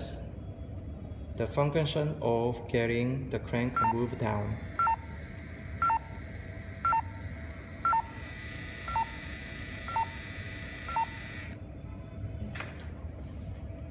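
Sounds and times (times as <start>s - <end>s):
faint high whine: 3.5s - 12.3s.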